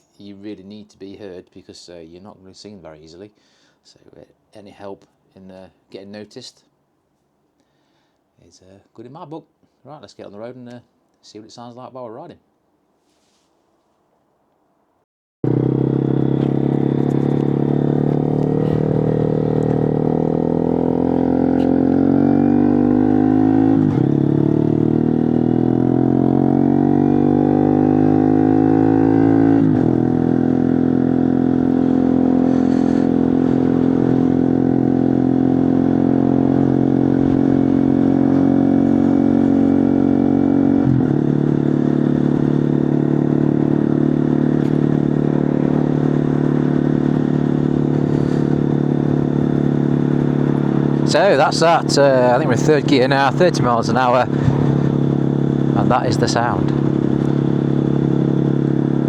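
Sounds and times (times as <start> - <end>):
loud motorcycle engine accelerating: 15.4 - 59.0.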